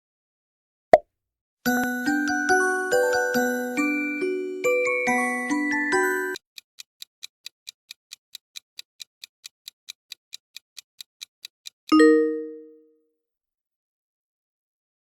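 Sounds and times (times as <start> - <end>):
clock ticking: 6.6 - 12.1.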